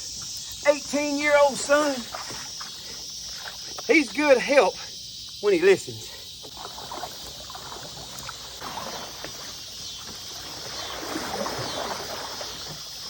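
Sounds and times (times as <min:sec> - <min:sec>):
high drone of insects: 0:00.0 - 0:13.0
water splashing and sloshing: 0:00.9 - 0:04.2, 0:06.4 - 0:13.0.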